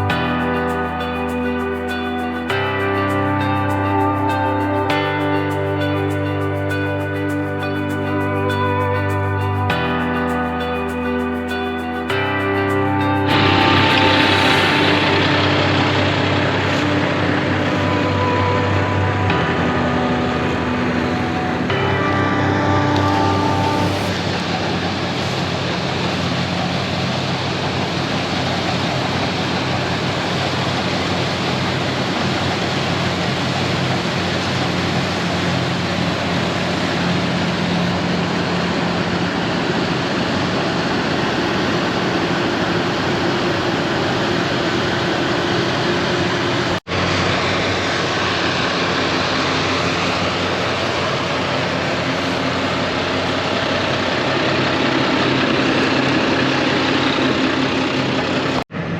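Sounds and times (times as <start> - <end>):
combine harvester running: 31.1 - 58.9.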